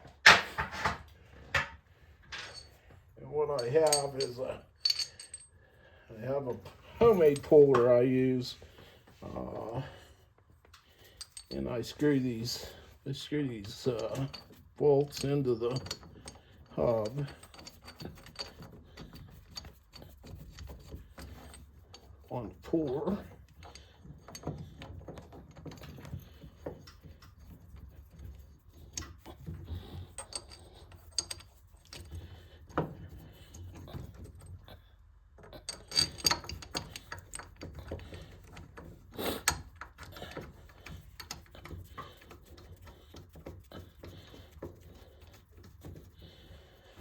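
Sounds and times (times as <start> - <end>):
metal bolts clinking: 1.6 - 2.8, 3.4 - 5.6, 6.6 - 8.2, 11.0 - 12.8, 13.4 - 34.7, 35.4 - 45.1.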